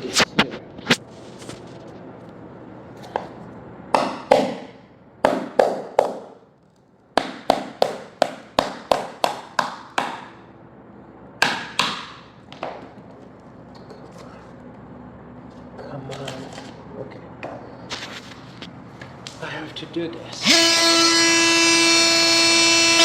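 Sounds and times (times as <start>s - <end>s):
hammer striking a chisel: 4.0s - 6.4s, 7.2s - 10.4s, 11.4s - 12.8s.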